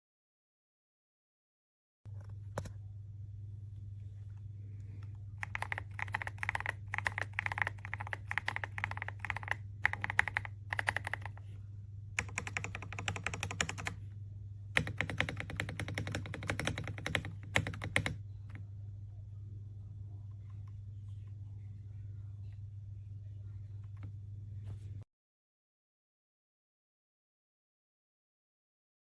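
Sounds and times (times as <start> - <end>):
steady low hum: 2.1 - 25.1
typing on mechanical keyboard: 5.4 - 11.4, 12.2 - 14.0, 14.8 - 18.2.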